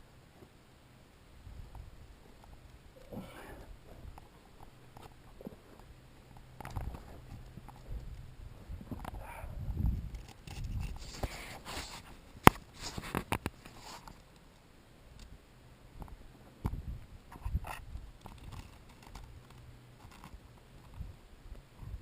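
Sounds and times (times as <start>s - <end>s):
crunches and scrapes of handling: 1.7s - 14.3s, 17.3s - 21.1s.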